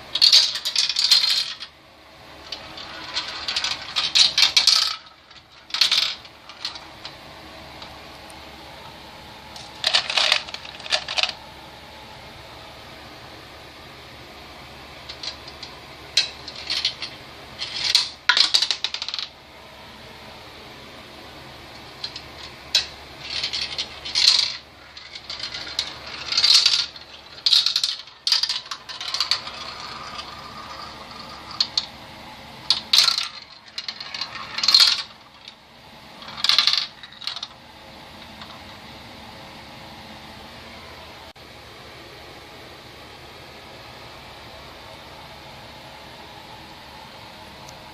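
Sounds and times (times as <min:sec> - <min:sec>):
marbles rattling down marble run: 0:00.1 - 0:01.7, 0:02.5 - 0:07.1, 0:09.7 - 0:11.4, 0:15.1 - 0:19.3, 0:22.0 - 0:31.9, 0:32.7 - 0:35.6, 0:36.2 - 0:37.6.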